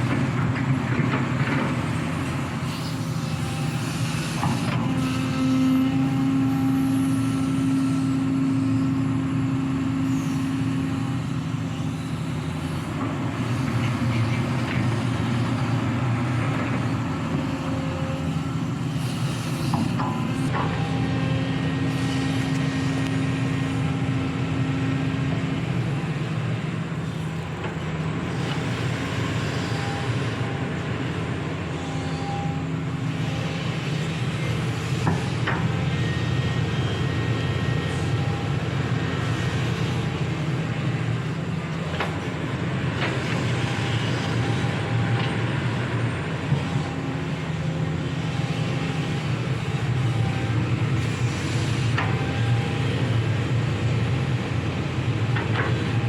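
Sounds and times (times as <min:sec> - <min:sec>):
excavator diesel engine running: 0:00.0 - 0:56.0.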